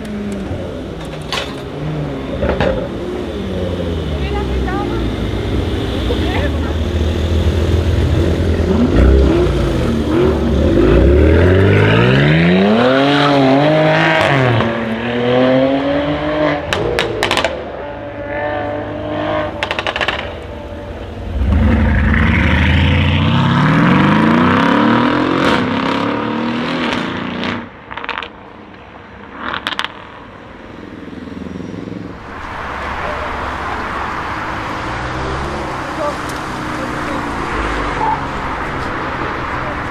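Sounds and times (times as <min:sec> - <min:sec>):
car engine accelerating hard: 0:01.8 - 0:28.2
exhaust crackles and pops: 0:19.6 - 0:20.6, 0:27.9 - 0:28.8, 0:29.4 - 0:30.1.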